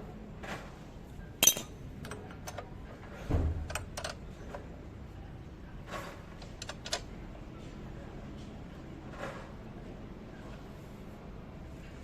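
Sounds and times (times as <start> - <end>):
metal tools clinking: 1.4 - 2.2.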